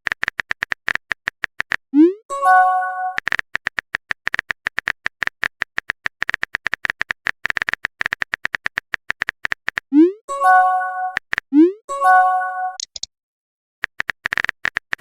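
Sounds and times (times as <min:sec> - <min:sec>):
phone keyboard typing clicks: 0:00.0 - 0:01.8, 0:03.1 - 0:09.9, 0:12.7 - 0:13.1, 0:13.8 - 0:15.0.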